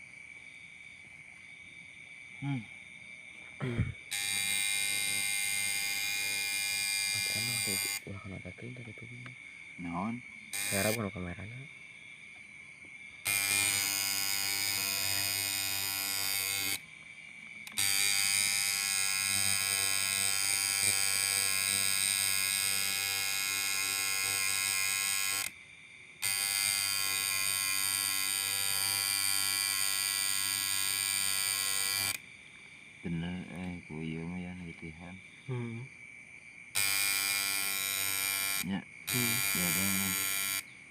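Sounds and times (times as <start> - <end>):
tattoo machine buzzing: 3.6 - 8.1, 10.5 - 11.1, 13.2 - 16.8, 17.6 - 25.6, 26.2 - 32.2, 36.7 - 40.7.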